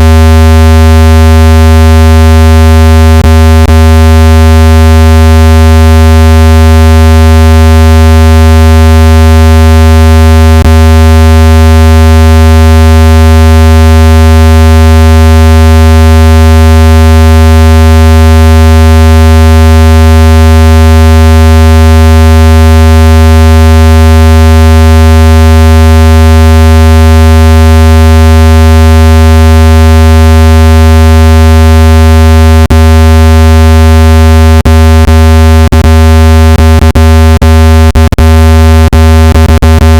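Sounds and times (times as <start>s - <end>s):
low buzzing electronic tone: 0.0s - 39.9s.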